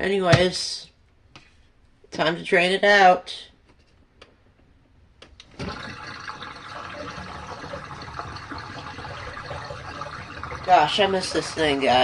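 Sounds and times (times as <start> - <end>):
water pouring through drain hose: 5.4 - 12.0.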